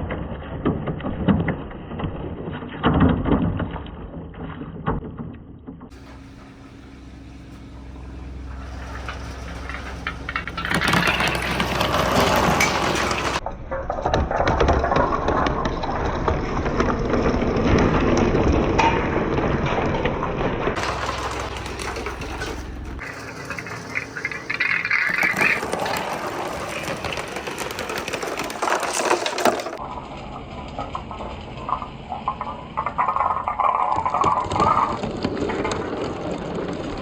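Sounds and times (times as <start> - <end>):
marbles rolling down wooden track: 5.9 - 13.4, 20.8 - 29.8, 31.5 - 37.0.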